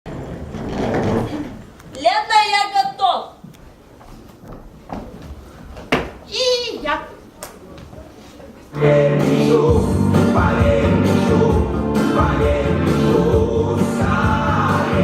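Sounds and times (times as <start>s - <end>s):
song with singing: 8.7s - 15.0s.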